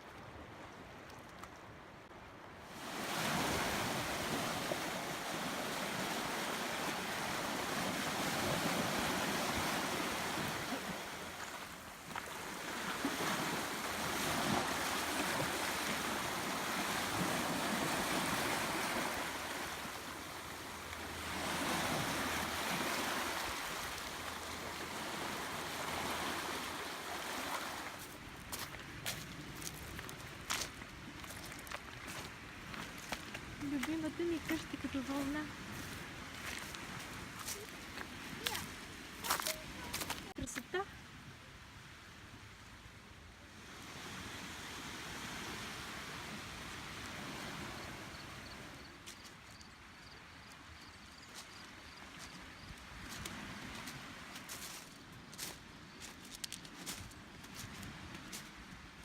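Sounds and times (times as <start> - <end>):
waves washing in: 2.4 - 49.1.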